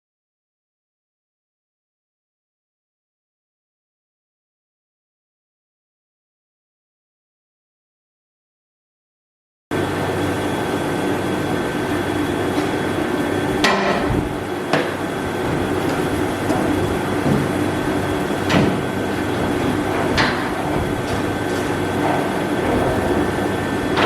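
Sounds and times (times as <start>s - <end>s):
heater humming with whine: 9.7s - 24.0s
sharp knocks: 13.6s - 24.0s.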